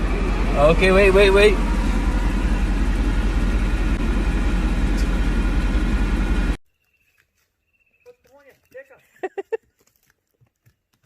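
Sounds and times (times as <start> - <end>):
engine rumble and hiss: 0.0 - 6.6.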